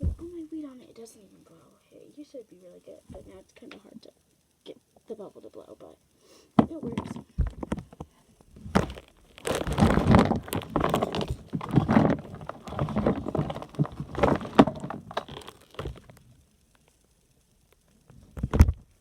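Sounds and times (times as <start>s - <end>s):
soft thunks and knocks: 0.0s - 0.3s
toys rustling and crinkling: 6.6s - 17.0s.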